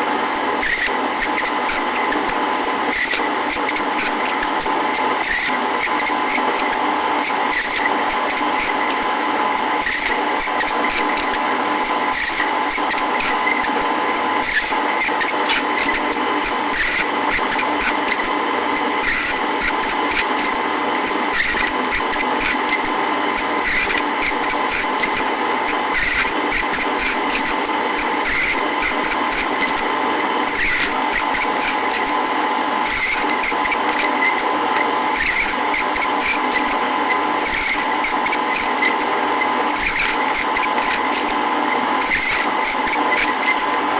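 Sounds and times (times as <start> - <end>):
lathe cutting tool on metal: 0.0 - 43.9
metal lathe motor whine: 0.0 - 43.9.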